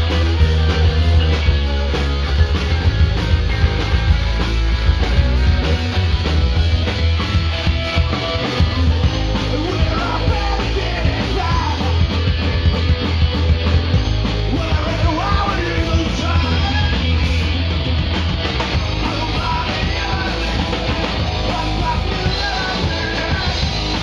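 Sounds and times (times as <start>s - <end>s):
punk rock band playing: 0.0s - 24.0s.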